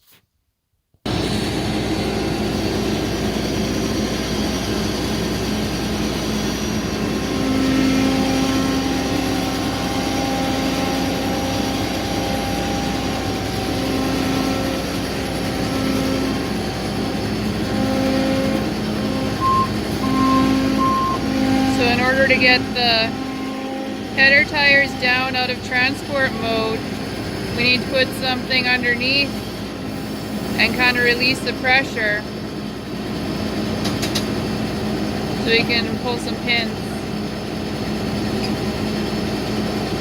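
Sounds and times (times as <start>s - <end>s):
combine diesel engine running: 1.1s - 40.0s
reversing alarm beeping: 11.2s - 26.5s.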